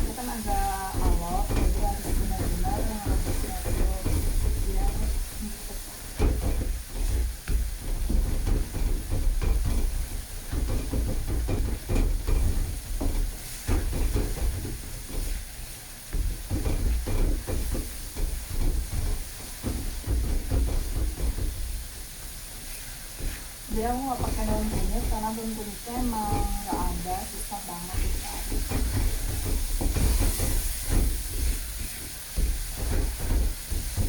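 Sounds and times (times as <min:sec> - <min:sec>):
paste sizzling in hot oil: 0:00.0 - 0:34.0
spatula scraping a pan: 0:00.0 - 0:34.0.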